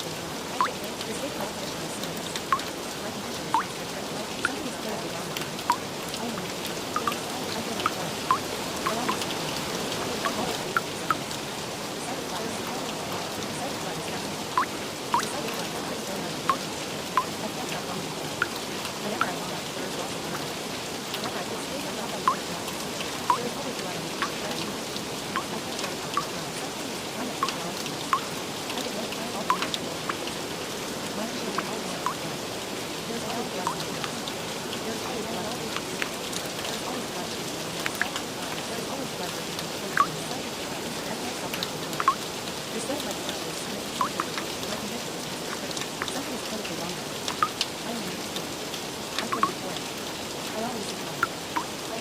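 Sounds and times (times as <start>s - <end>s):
water drops plinking: 0.0s - 20.5s, 21.2s - 30.4s, 31.1s - 32.4s, 33.1s - 48.4s, 49.2s - 49.9s, 50.6s - 52.0s
steady rain falling: 0.0s - 52.0s
drops plinking: 2.4s - 2.7s, 3.5s - 5.9s, 6.9s - 9.3s, 14.5s - 15.5s, 22.0s - 22.5s, 23.3s - 23.6s, 25.3s - 26.4s, 40.0s - 40.2s, 42.0s - 42.2s, 44.0s - 44.4s, 49.2s - 49.6s.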